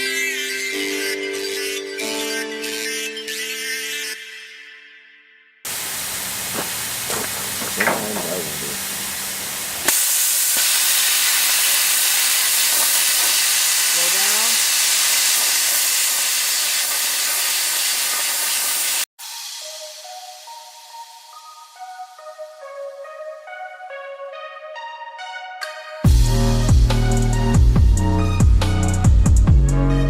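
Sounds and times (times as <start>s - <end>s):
plasma torch hissing: 5.7s - 19.1s.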